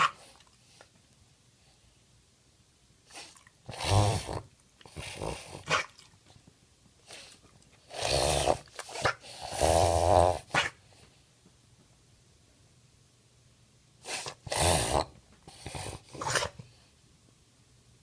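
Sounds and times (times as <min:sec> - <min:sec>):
dog reverse sneezing: 0:05.0 - 0:06.0, 0:10.4 - 0:10.8, 0:14.0 - 0:15.1, 0:15.9 - 0:16.7.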